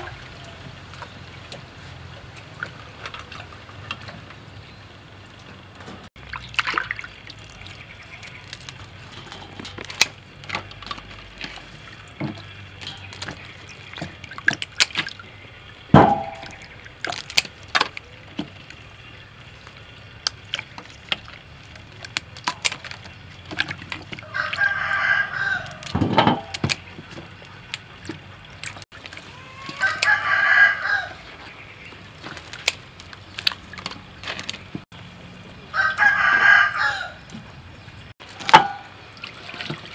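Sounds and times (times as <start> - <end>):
rooster crowing: 24.2 - 26.0, 29.3 - 31.3, 35.7 - 37.3.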